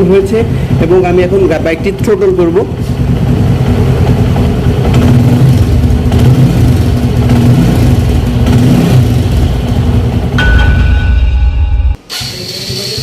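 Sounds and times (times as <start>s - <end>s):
motorcycle engine revving: 0.0s - 10.4s.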